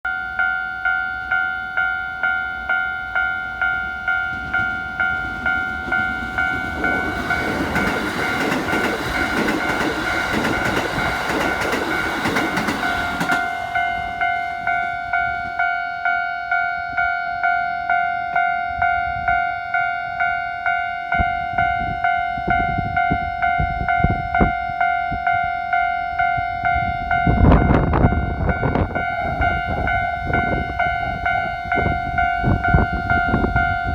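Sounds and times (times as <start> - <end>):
level crossing bell ringing: 0.1 - 33.9
train rushing past: 3.2 - 15.8, 26.6 - 33.9
train wheels clattering: 3.7 - 14.8.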